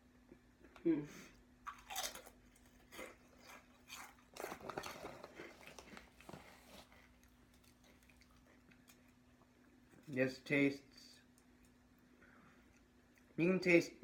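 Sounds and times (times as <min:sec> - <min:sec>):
potato chips being chewed: 0:01.6 - 0:10.2.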